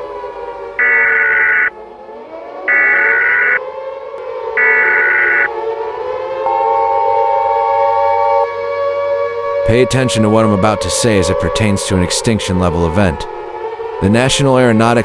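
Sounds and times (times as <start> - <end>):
siren wail: 0.0 - 15.0
digital data tone bursts: 0.8 - 1.7
steady attention tone: 0.8 - 1.7, 6.4 - 8.5.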